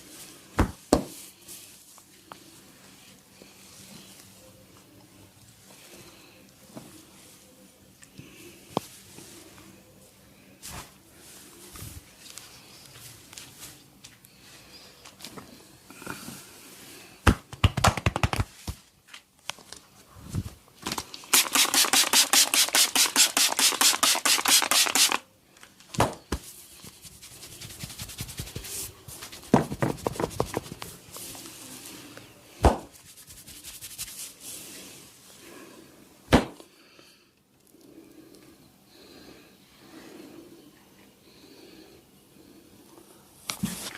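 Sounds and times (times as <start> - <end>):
sharp slaps and snaps: 17.3 - 18.5, 36.3 - 36.6.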